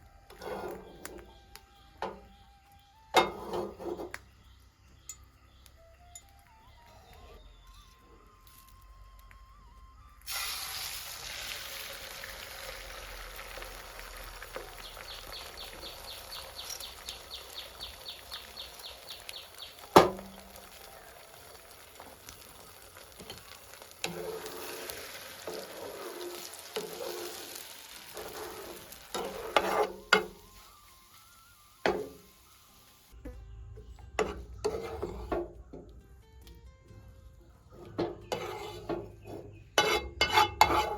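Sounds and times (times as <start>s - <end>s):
spatula scraping a pan: 0.3s - 2.3s, 3.2s - 4.2s, 23.2s - 30.7s, 33.9s - 35.6s, 37.7s - 40.9s
food sizzling in oil: 10.3s - 33.2s.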